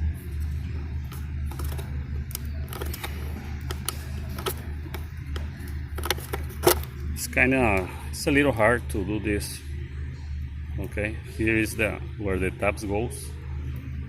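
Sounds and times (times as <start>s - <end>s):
steady low hum: 0.0s - 14.0s
plastic clicks and scrapes: 1.1s - 7.0s.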